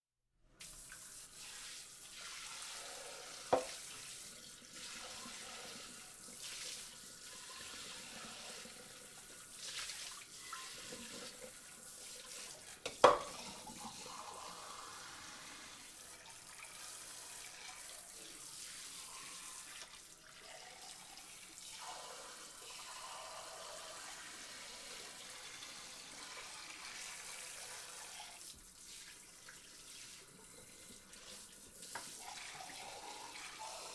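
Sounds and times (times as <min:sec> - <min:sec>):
water spraying onto dishes: 0:00.6 - 0:20.1.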